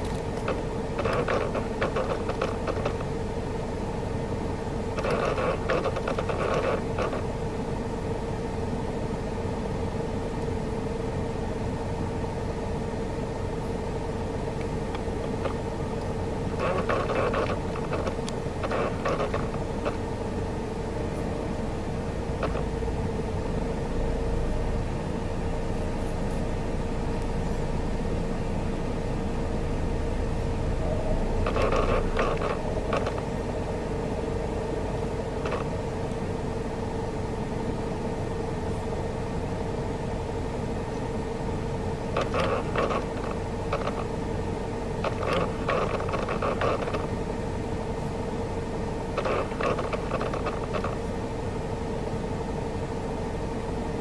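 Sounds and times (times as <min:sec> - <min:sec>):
car cabin hum: 0:00.0 - 0:07.7, 0:14.0 - 0:39.2, 0:40.7 - 0:47.8, 0:48.4 - 0:51.3.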